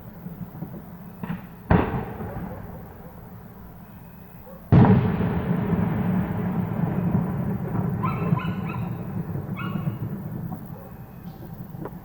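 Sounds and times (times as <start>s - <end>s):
firework boom with rumbling echo: 0.2s - 3.7s, 4.7s - 12.0s
high-pitched yelps: 8.0s - 9.0s, 9.6s - 10.0s.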